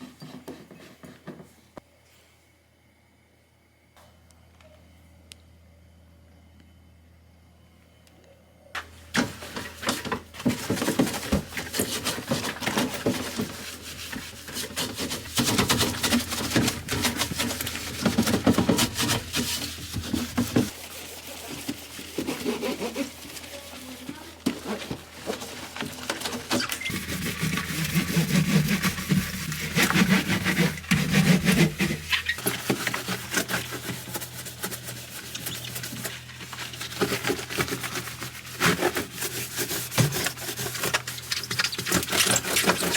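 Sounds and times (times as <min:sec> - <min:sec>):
household items clattering: 0:08.8 - 0:20.7, 0:22.3 - 0:34.1
scrubbing: 0:09.2 - 0:42.9.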